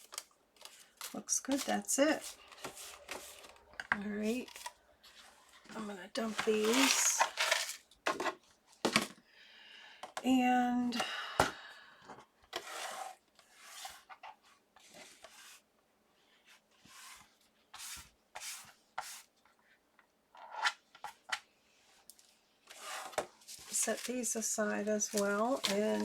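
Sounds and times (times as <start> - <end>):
paper rustling and scraping: 0.0 - 8.4, 12.6 - 15.6, 16.4 - 19.3, 22.6 - 26.0.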